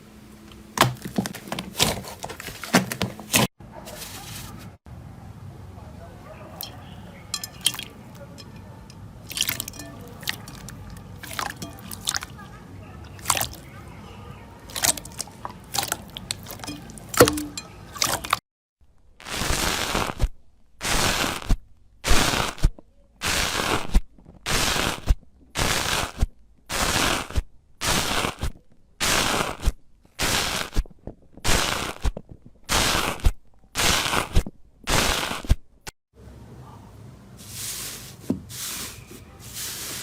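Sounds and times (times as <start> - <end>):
gritty scraping strokes: 37.4 - 40.0.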